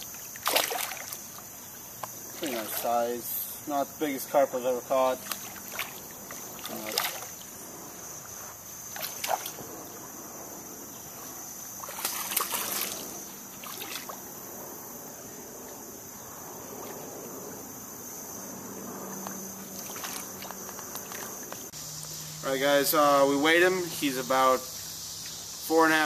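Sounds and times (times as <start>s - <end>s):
water splashing and sloshing: 0.0s - 3.6s, 4.7s - 10.1s, 11.0s - 14.5s, 18.7s - 21.8s
steady high-pitched hum: 0.9s - 25.8s.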